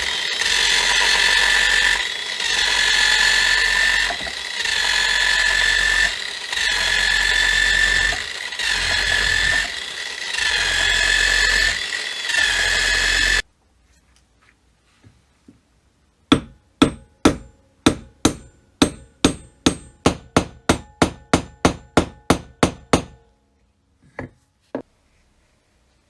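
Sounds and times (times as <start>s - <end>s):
hammer striking metal: 16.3s - 23.3s.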